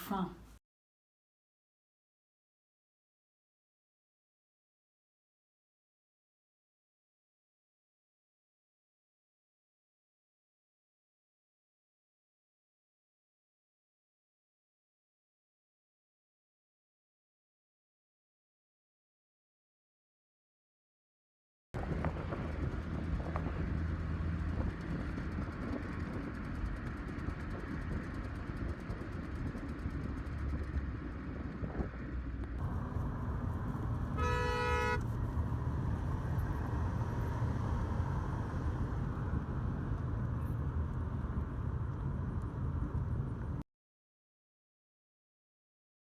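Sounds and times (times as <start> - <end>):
road traffic rumble: 21.8 - 43.6
vehicle horn: 34.0 - 35.2.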